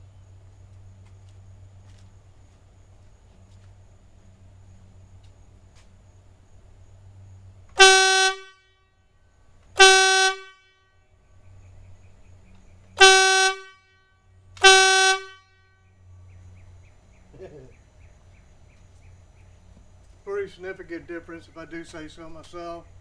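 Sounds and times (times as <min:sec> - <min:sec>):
motorcycle horn blasts: 0:07.7 - 0:08.8, 0:09.8 - 0:10.8, 0:13.0 - 0:14.0, 0:14.6 - 0:15.6.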